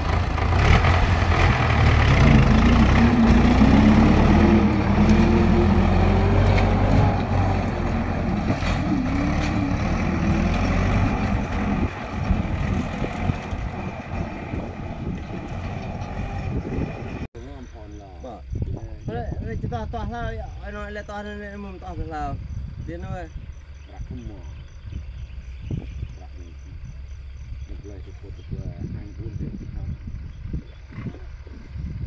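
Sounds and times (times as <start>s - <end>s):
tractor engine running: 0.0s - 17.3s.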